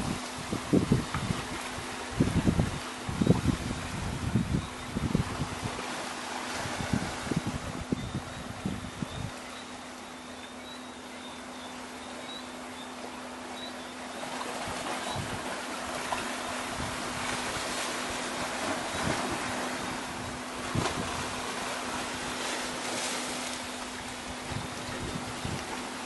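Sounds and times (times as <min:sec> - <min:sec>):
wind buffeting microphone: 0:00.0 - 0:09.4, 0:14.6 - 0:22.5, 0:24.2 - 0:25.8
surf washing: 0:00.0 - 0:10.0, 0:14.1 - 0:26.0
low steady hum: 0:00.0 - 0:26.0
faint high chirping: 0:08.0 - 0:14.2.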